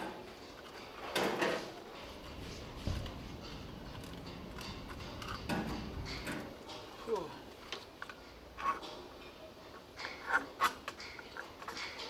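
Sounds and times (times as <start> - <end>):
objects knocking and clicking: 0.0 - 7.0.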